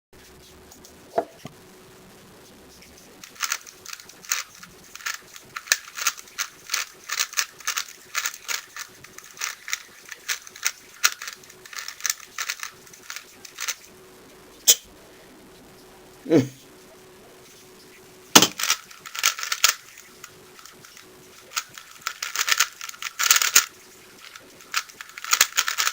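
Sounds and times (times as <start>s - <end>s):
plastic cube clacking: 3.2s - 13.8s, 18.4s - 25.9s.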